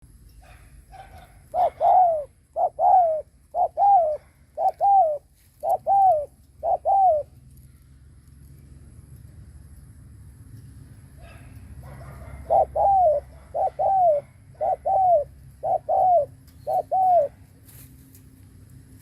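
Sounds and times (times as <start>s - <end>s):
dove cooing: 0.4s - 7.5s, 11.2s - 17.6s.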